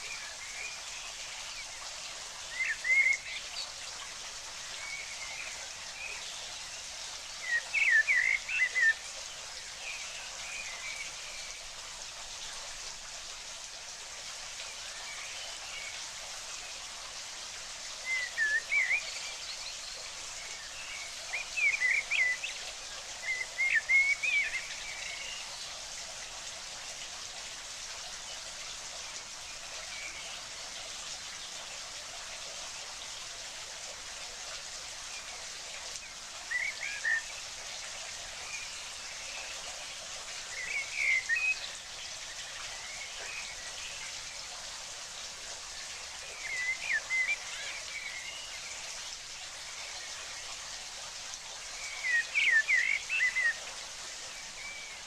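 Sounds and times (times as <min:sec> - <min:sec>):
hiss of water: 0:00.0 - 0:55.0.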